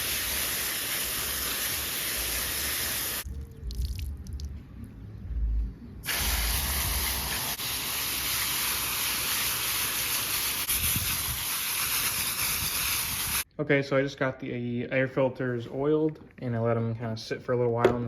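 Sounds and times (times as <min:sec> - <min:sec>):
hose water spraying: 0:00.0 - 0:03.3, 0:06.0 - 0:13.5.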